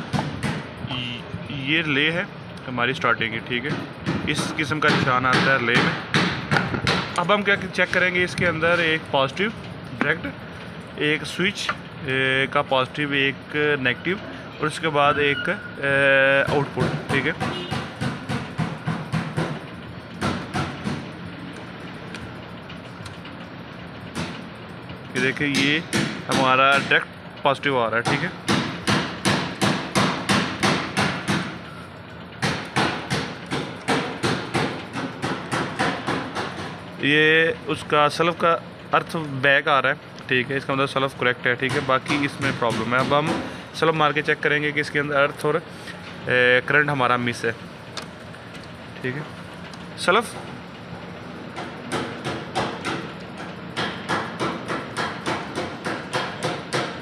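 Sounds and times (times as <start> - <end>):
hammering: 3.7 - 7.3, 16.4 - 19.6, 25.2 - 27.0, 28.0 - 31.6, 32.4 - 36.8, 41.6 - 43.5, 51.6 - 57.0.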